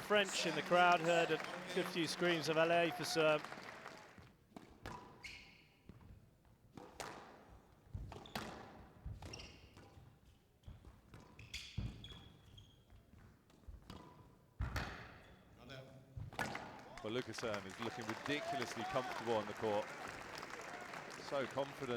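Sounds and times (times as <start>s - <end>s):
shoe squeaks on court: 4.9s - 5.8s, 9.2s - 10.0s, 11.2s - 13.0s.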